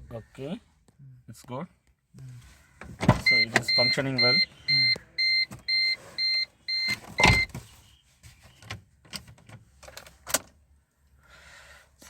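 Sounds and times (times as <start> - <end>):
dashboard warning chime beeping: 3.2 - 7.6.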